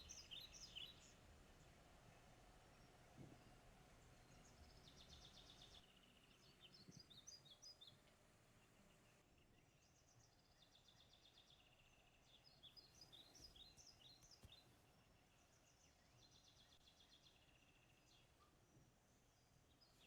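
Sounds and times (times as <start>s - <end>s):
faint bird chirps: 8.6s - 20.0s.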